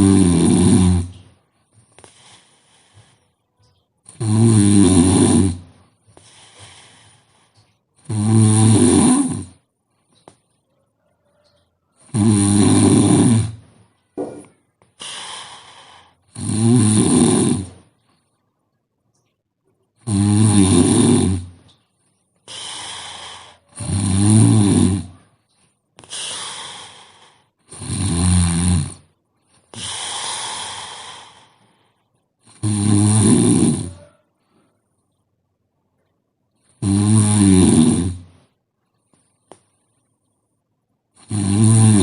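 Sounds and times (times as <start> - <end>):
woman snoring: 0.0 - 1.1, 4.1 - 7.4, 8.0 - 9.6, 12.0 - 13.6, 15.0 - 17.9, 20.0 - 21.6, 22.5 - 25.2, 26.0 - 31.6, 32.4 - 34.2, 36.8 - 38.4, 41.2 - 42.0
woman breathing: 1.7 - 3.3, 6.1 - 7.7, 15.0 - 16.3, 22.5 - 23.8, 26.0 - 27.6, 29.5 - 32.1.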